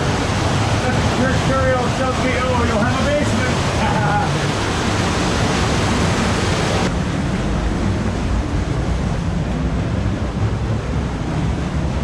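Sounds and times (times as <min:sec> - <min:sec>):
rushing creek water: 0:00.0 - 0:07.4.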